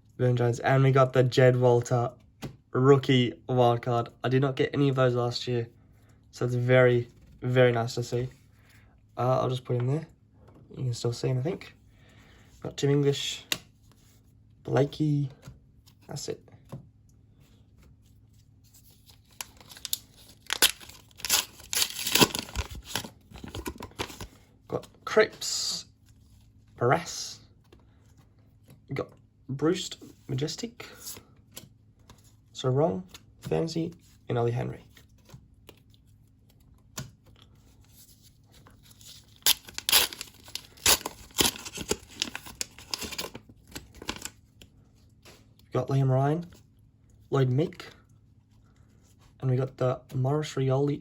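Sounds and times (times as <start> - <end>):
wrapper being torn and crinkled: 19.2 - 24.2, 38.9 - 44.4.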